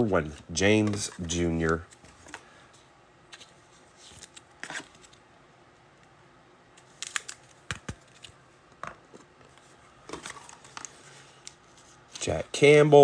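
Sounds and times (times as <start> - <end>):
trading cards handled on table: 6.9 - 8.4.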